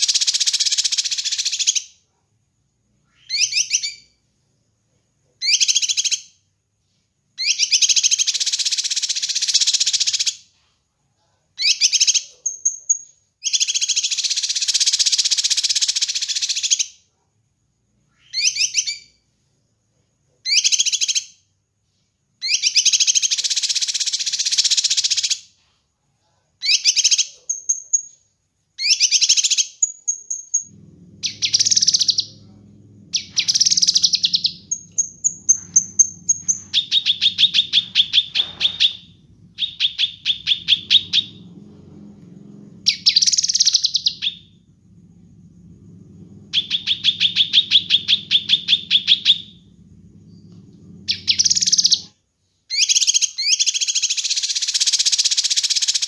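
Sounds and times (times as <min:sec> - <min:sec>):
songbird singing: 0:03.0 - 0:04.2, 0:28.8 - 0:56.0
low steady hum: 0:30.6 - 0:52.1.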